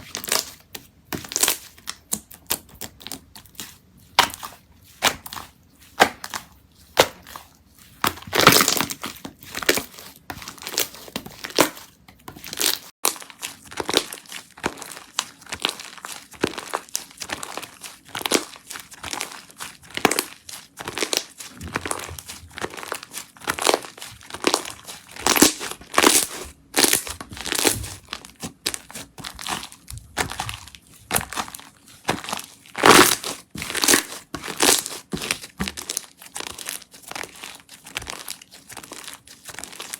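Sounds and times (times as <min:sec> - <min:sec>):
slime squished by hand: 0:12.4 - 0:39.9.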